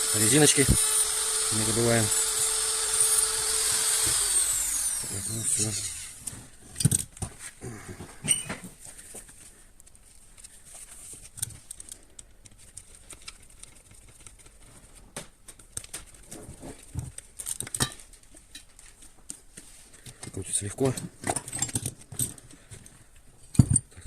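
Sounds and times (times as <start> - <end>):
light clicks and knocks of parts: 8.3 - 24.0.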